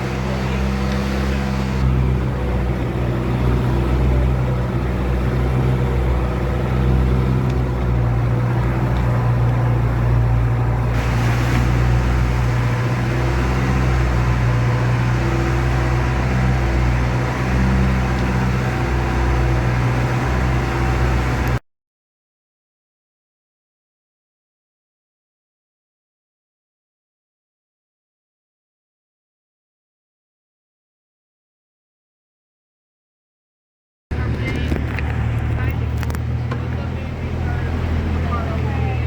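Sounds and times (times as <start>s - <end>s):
boat engine humming: 0.0s - 21.6s, 34.1s - 39.0s
wind and water hiss: 10.5s - 21.6s.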